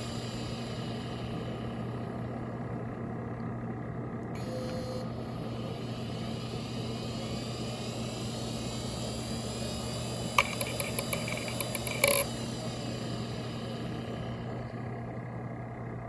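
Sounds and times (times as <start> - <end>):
hard drive whine and hum: 0.0 - 16.0
hard drive heads clicking: 10.4 - 12.3.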